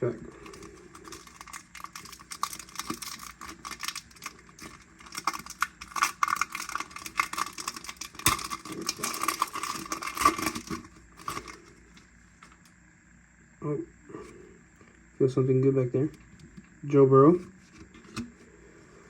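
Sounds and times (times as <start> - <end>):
foil wrapper crinkling: 0.3 - 12.6.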